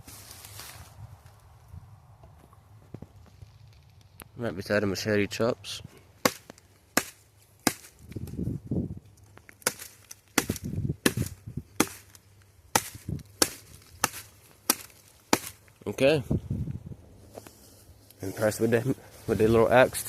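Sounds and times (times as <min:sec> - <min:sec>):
hatchet chopping branch: 0:06.2 - 0:08.4, 0:09.3 - 0:15.8.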